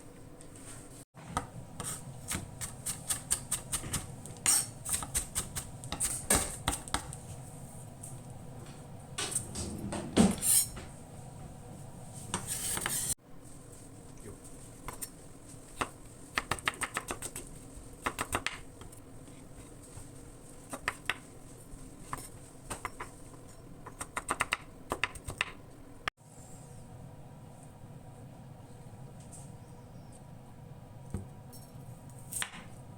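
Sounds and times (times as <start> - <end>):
dishes clattering: 9.2 - 11.0.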